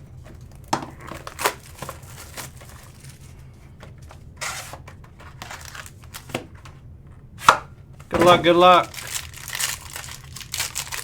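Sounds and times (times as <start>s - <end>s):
packaging crinkling: 0.3s - 6.4s, 8.2s - 11.0s
packaging rustle: 0.3s - 6.4s, 8.2s - 11.0s
packaging clicks: 5.3s - 6.4s, 8.2s - 11.0s.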